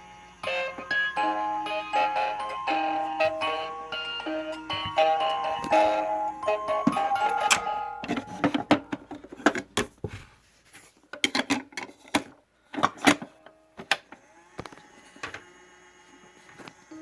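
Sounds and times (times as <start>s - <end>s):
faint music box notes: 0.4s - 9.1s.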